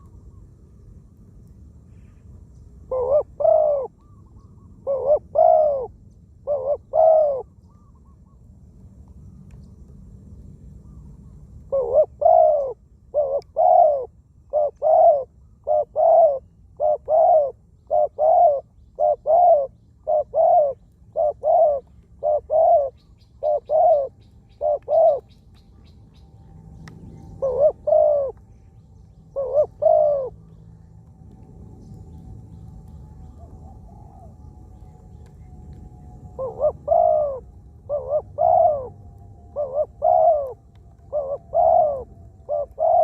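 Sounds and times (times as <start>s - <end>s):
dove cooing: 2.9s - 7.9s, 11.7s - 25.3s, 27.2s - 28.4s, 29.3s - 30.5s, 33.2s - 43.0s.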